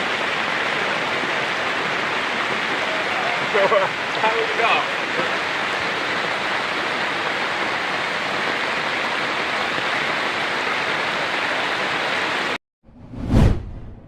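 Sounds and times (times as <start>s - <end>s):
heavy rain falling: 0.0s - 12.6s.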